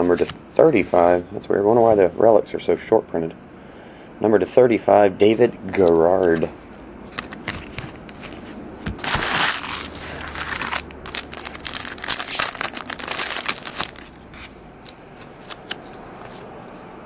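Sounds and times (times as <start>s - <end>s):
wrapper tearing and crinkling: 8.9s - 14.2s
cards clicking: 8.9s - 16.5s.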